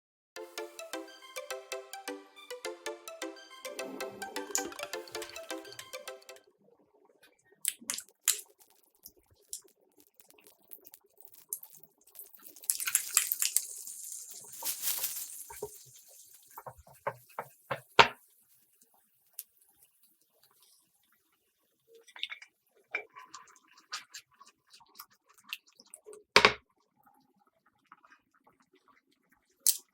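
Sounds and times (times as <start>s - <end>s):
hiss: 13.4s - 16.6s.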